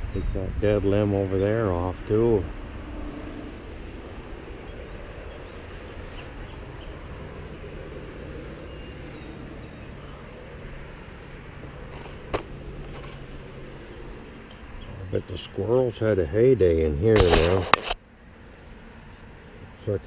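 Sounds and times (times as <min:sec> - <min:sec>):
outdoor hum and rustle: 0:00.0 - 0:20.0
sharp click: 0:17.2 - 0:18.0.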